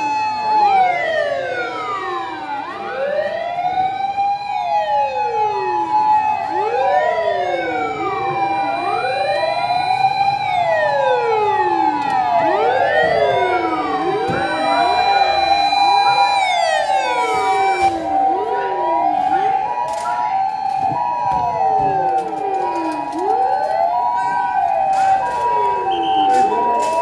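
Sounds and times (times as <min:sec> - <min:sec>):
fire engine sirens wailing: 0:00.0 - 0:27.0.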